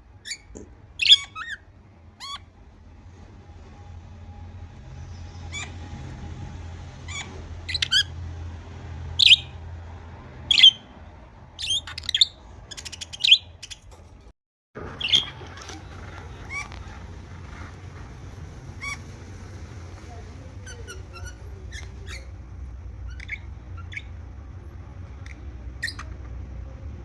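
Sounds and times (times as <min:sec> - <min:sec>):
budgerigars chirping and squawking: 0:00.2 - 0:01.6, 0:02.2 - 0:02.5, 0:05.4 - 0:05.9, 0:07.1 - 0:08.2, 0:09.2 - 0:09.6, 0:10.5 - 0:10.9, 0:11.6 - 0:13.9, 0:14.9 - 0:17.8, 0:18.8 - 0:19.2, 0:20.6 - 0:22.4, 0:23.0 - 0:24.2, 0:25.2 - 0:26.2
rattling bird trill: 0:00.2 - 0:02.5, 0:07.1 - 0:08.1, 0:14.9 - 0:16.7.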